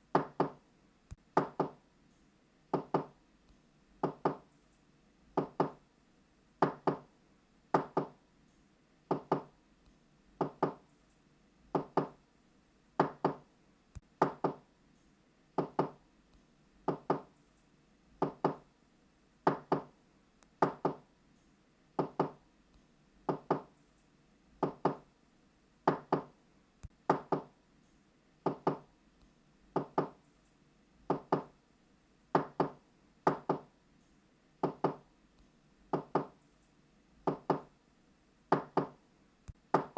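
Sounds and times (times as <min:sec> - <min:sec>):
knocking on a door: 0:00.1 - 0:00.6, 0:01.4 - 0:01.8, 0:02.7 - 0:03.2, 0:04.0 - 0:04.4, 0:05.4 - 0:05.8, 0:06.6 - 0:07.1, 0:07.7 - 0:08.2, 0:09.1 - 0:09.5, 0:10.4 - 0:10.8, 0:11.7 - 0:12.2, 0:13.0 - 0:13.4, 0:14.2 - 0:14.6, 0:15.6 - 0:16.0, 0:16.9 - 0:17.3, 0:18.2 - 0:18.6, 0:19.5 - 0:19.9, 0:20.6 - 0:21.0, 0:22.0 - 0:22.4, 0:23.3 - 0:23.7, 0:24.6 - 0:25.0, 0:25.9 - 0:26.3, 0:27.1 - 0:27.5, 0:28.4 - 0:28.9, 0:29.8 - 0:30.2, 0:31.1 - 0:31.5, 0:32.4 - 0:33.7, 0:34.6 - 0:35.0, 0:35.9 - 0:36.4, 0:37.2 - 0:37.7, 0:38.5 - 0:39.0.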